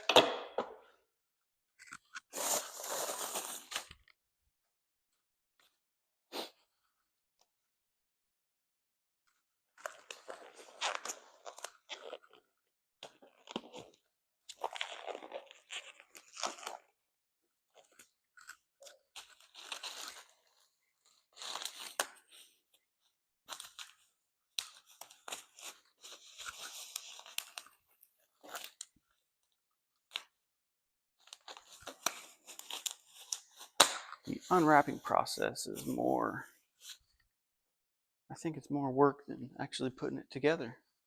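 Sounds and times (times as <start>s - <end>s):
plastic packaging crinkling and tearing: 1.8s - 4.0s, 13.0s - 16.9s, 17.7s - 22.5s, 23.5s - 27.8s, 31.2s - 34.8s.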